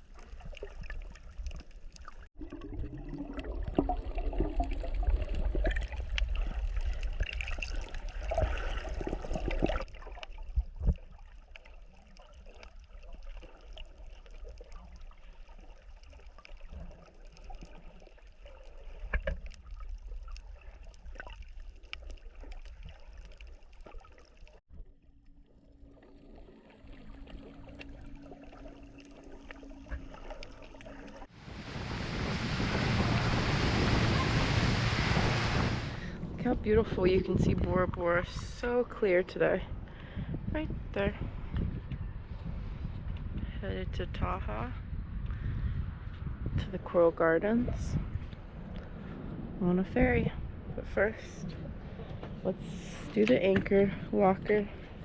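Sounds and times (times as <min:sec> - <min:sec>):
water trickling and sloshing: 0:00.0 - 0:43.9, 0:45.0 - 0:55.0
steady low hum: 0:31.0 - 0:38.8.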